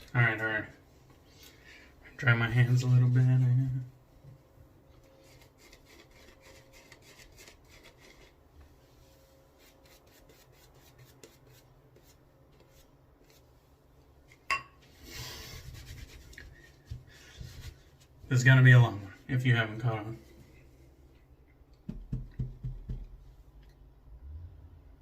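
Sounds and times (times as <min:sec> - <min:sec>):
hands rubbing on towel: 0:15.0 - 0:18.1.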